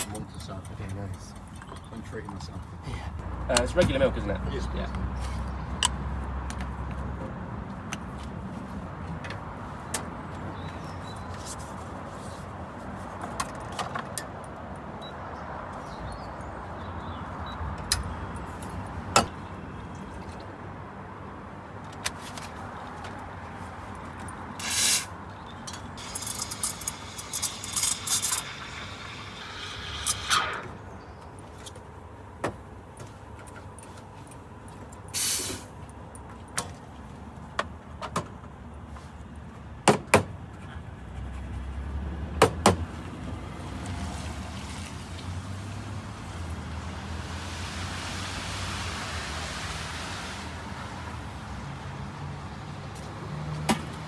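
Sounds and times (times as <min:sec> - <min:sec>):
cup and metal tools clinking: 0:25.6 - 0:28.8
espresso machine hissing: 0:26.0 - 0:30.8
short loud steam hisses: 0:26.0 - 0:30.8, 0:35.2 - 0:35.7.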